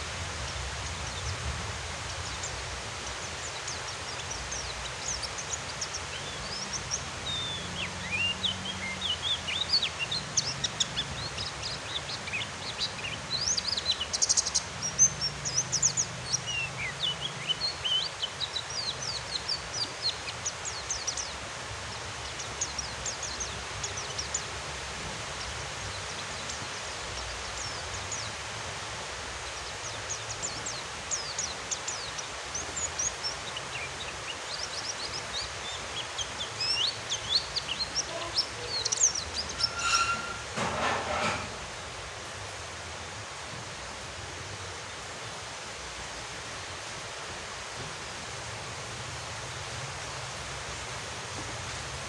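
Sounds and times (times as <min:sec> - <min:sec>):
steady rain hiss: 0:00.0 - 0:52.0
bird twittering: 0:36.2 - 0:40.4.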